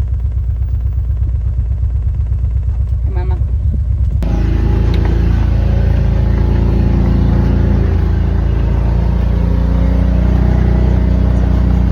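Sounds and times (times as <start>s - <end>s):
utility vehicle engine hum: 0.0s - 11.9s.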